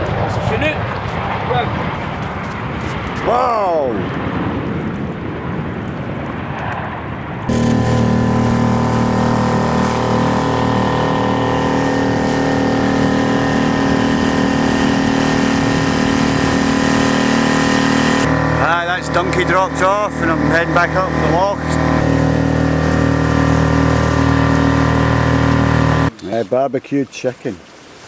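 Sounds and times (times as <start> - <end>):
rushing noise: 7.3 - 26.1
outboard motor running: 7.5 - 26.6.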